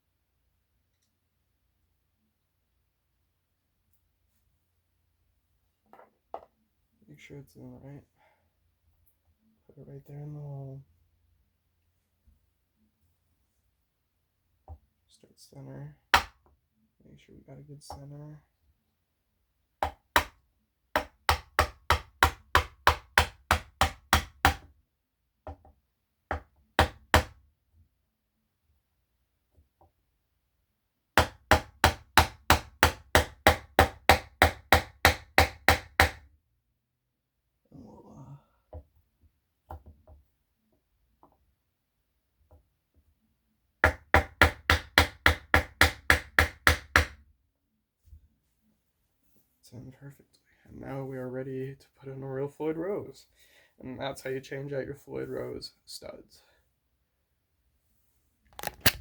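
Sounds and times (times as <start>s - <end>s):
hammer tapping: 16.2s - 16.4s.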